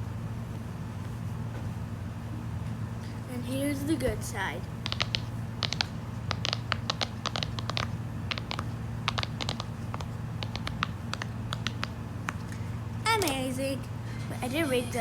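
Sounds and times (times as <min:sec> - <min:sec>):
fidget toy bubbles popping: 0:04.8 - 0:12.4.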